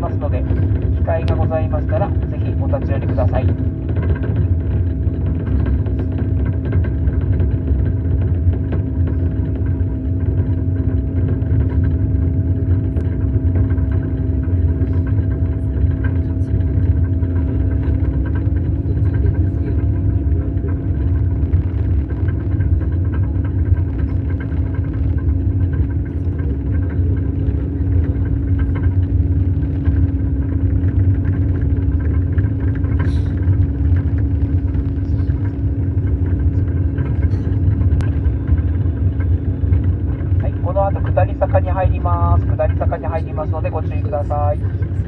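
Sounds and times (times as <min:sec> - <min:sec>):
constant hum: 0:00.0 - 0:45.0
snowcat engine and tracks rumbling: 0:00.0 - 0:45.0.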